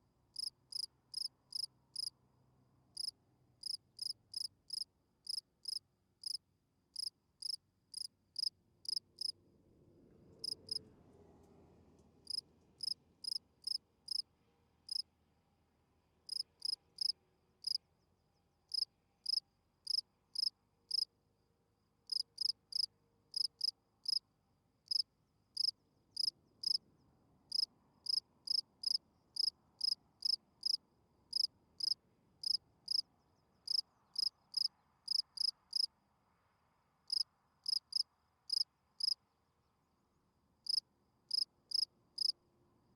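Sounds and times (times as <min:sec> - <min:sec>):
cricket chirping: 0:00.4 - 0:02.1, 0:03.0 - 0:06.4, 0:07.0 - 0:09.4, 0:10.4 - 0:10.8, 0:12.3 - 0:14.3, 0:16.3 - 0:17.8, 0:18.7 - 0:21.1, 0:22.1 - 0:24.2, 0:24.9 - 0:26.8, 0:27.5 - 0:35.9, 0:37.1 - 0:39.2, 0:40.6 - 0:42.4.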